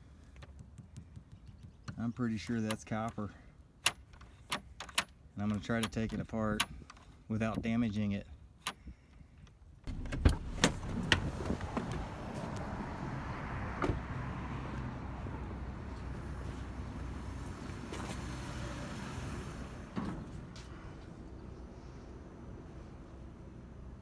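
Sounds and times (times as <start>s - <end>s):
clunks and rattles: 8.6s - 16.5s
vehicle engine rumble: 8.9s - 24.0s.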